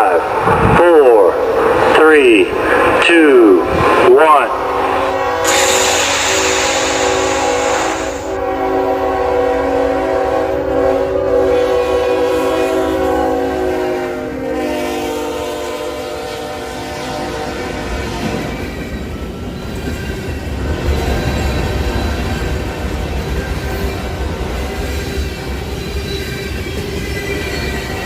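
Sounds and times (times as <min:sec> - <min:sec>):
train rumbling past: 0:00.0 - 0:28.0
locomotive air horn: 0:04.6 - 0:18.4
loud hiss: 0:05.4 - 0:08.4.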